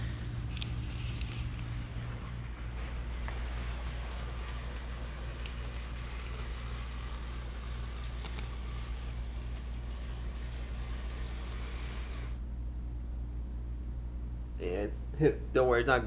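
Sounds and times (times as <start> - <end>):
electric motor hum: 0.0 - 12.6
wheels rattling over rails: 1.7 - 12.4.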